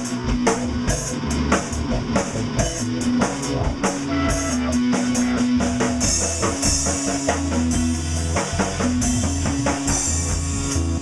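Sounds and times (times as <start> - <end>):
held bass notes: 0.0 - 11.0
rock music: 0.0 - 11.0.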